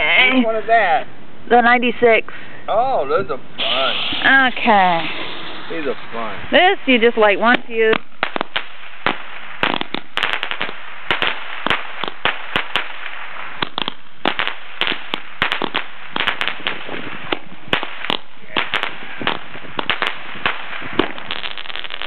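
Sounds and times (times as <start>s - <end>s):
firework battery popping: 3.6s - 22.0s.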